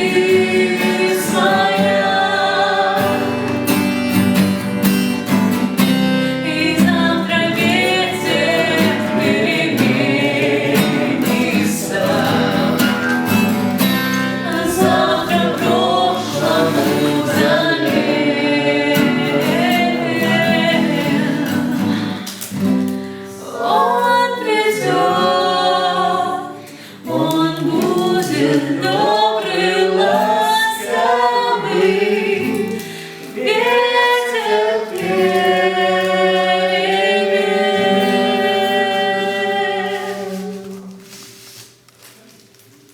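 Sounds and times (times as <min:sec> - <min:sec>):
group of voices singing: 0:00.0 - 0:05.0, 0:05.6 - 0:41.4
instrumental backing: 0:00.0 - 0:23.3.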